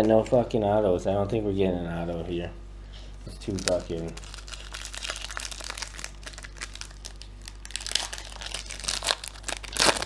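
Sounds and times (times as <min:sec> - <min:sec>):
plastic wrapper crinkling and tearing: 0:03.4 - 0:10.0.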